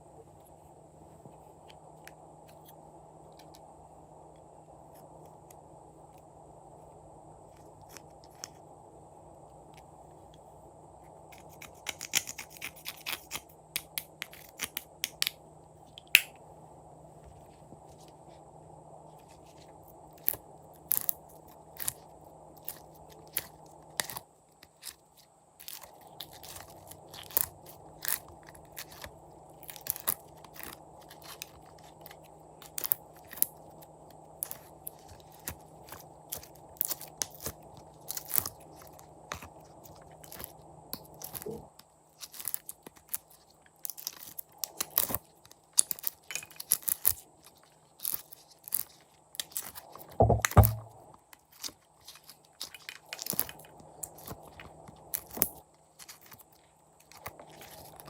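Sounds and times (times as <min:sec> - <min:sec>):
faint steady hum: 0:00.0 - 0:58.0
slime clicking and crackling: 0:25.6 - 0:50.9, 0:51.5 - 0:58.0.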